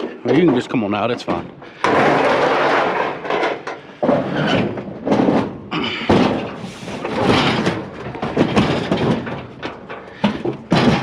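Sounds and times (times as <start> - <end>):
appliance scraping and knocking: 6.1 - 11.0.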